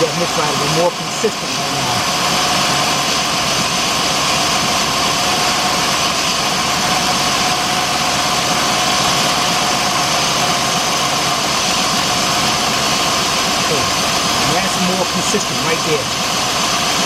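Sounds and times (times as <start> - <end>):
misfiring engine idling: 0.0 - 17.0.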